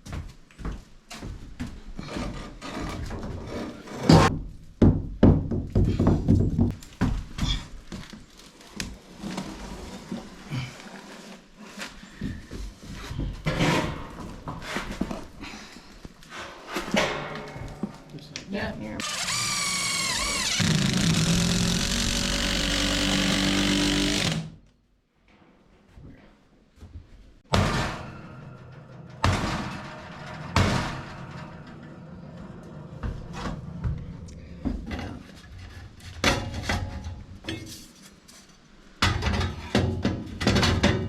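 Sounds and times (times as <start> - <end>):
power drill running: 19.0 - 24.5.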